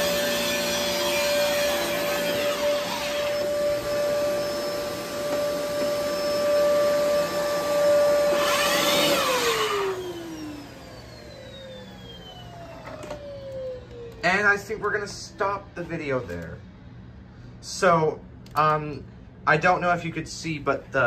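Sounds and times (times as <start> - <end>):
vacuum brush roll: 0.0 - 14.9
vacuum cleaner motor whine: 0.0 - 16.5.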